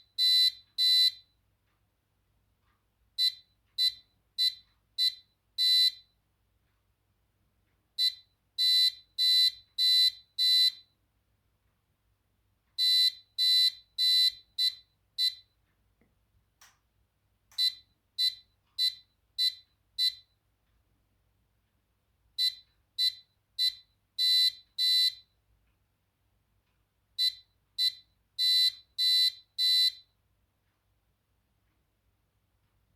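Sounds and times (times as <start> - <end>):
high-pitched morse code beeps: 0.2 - 1.2, 27.2 - 30.0.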